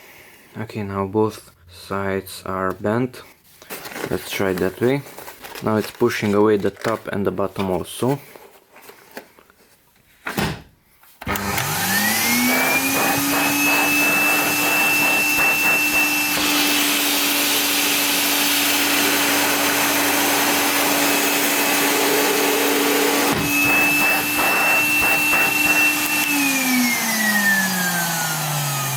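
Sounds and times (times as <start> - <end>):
vacuum cleaner motor whining: 11.2 - 28.9.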